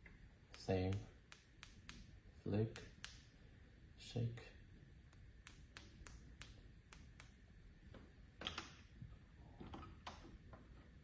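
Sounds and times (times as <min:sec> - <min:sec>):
light clicks and taps on electrodes: 0:00.0 - 0:03.4, 0:05.0 - 0:08.9.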